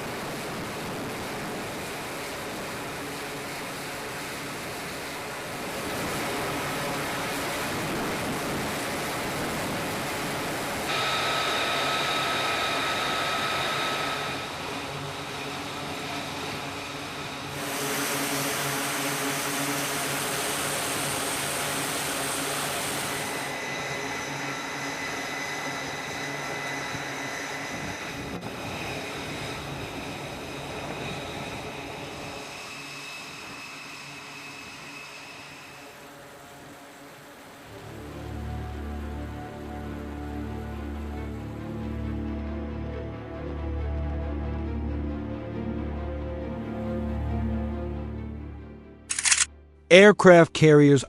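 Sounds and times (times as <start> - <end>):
jet engines whining: 0.0 - 44.0.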